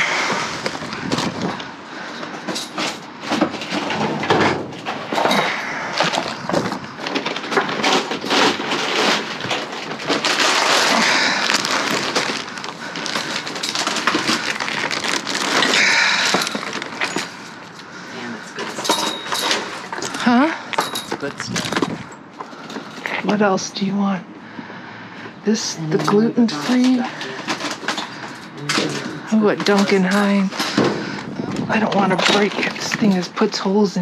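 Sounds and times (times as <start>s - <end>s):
items knocking and clunking: 0.0s - 23.5s, 25.9s - 33.3s
plastic packaging crinkling: 5.1s - 20.3s.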